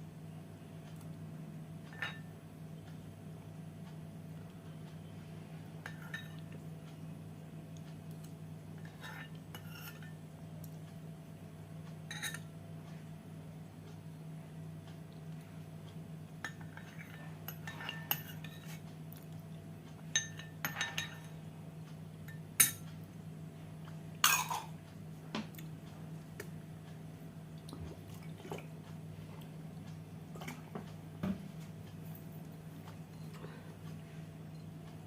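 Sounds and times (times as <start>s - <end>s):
steady low hum: 0.0s - 35.0s
dishes and cutlery clinking: 8.8s - 10.2s, 12.1s - 12.4s, 16.4s - 18.8s, 20.2s - 21.4s, 24.2s - 24.8s.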